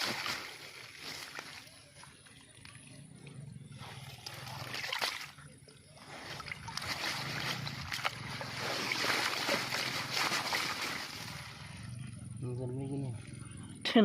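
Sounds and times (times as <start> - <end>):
water splashing and sloshing: 0.0 - 12.4.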